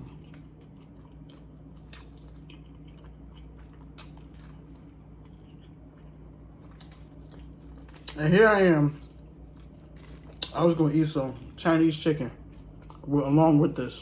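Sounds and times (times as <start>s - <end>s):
person chewing food: 0.0s - 8.2s, 8.9s - 10.6s, 12.4s - 13.1s
faint low hum: 0.0s - 14.0s.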